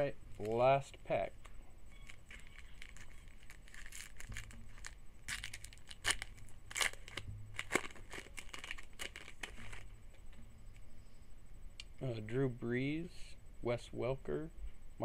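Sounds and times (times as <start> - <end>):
wrapper tearing and crinkling: 1.9 - 9.9.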